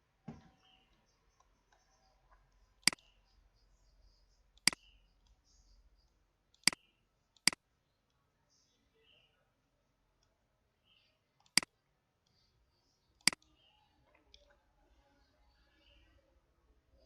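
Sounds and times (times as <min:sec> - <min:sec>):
computer mouse clicking: 0:06.6 - 0:06.8.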